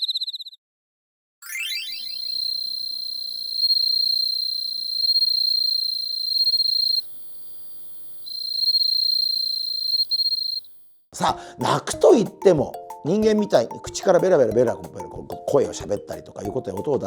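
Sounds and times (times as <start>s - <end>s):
cricket trilling: 2.0s - 11.1s.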